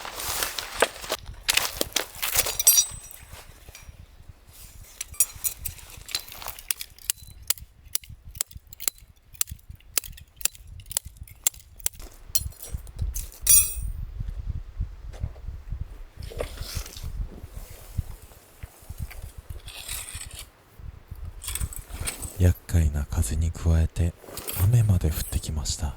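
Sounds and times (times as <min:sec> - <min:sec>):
low wind rumble: 0:00.0 - 0:25.9
ringing metallic clangs: 0:02.4 - 0:03.4, 0:13.5 - 0:13.9.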